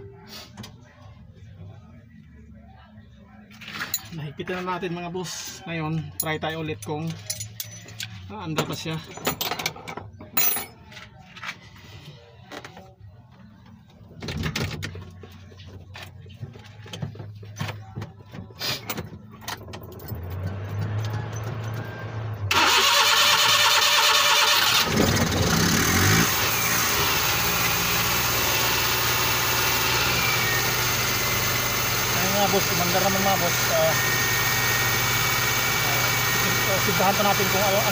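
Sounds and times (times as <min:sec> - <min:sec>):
car engine starting and running: 0:19.5 - 0:37.9.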